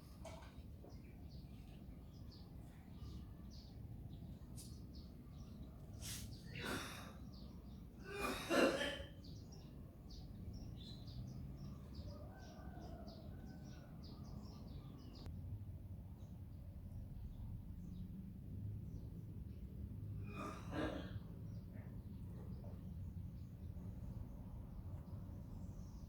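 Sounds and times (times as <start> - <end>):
person coughing: 8.0 - 9.2.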